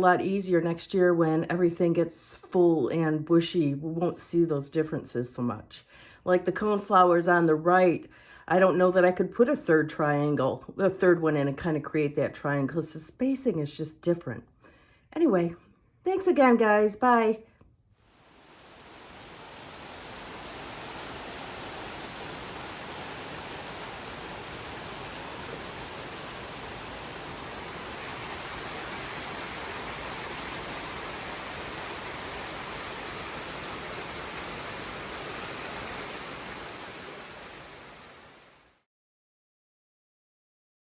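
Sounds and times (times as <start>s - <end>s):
rushing water: 18.1s - 38.7s.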